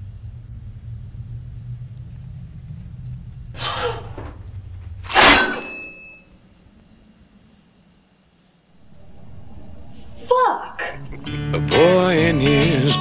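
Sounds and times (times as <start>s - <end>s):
crash with brief ringing: 5.1s - 6.3s
steady low hum: 8.8s - 12.2s.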